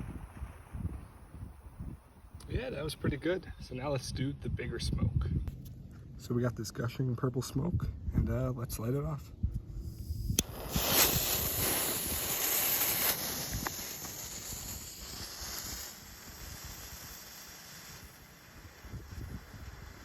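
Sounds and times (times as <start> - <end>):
smoke firework hissing: 0.0 - 3.0, 9.7 - 20.0.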